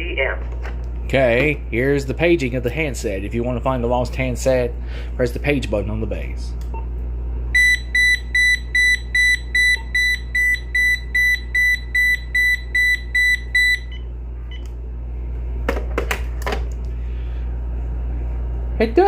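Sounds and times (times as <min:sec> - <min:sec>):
cordless phone paging beeps: 0:07.6 - 0:14.6.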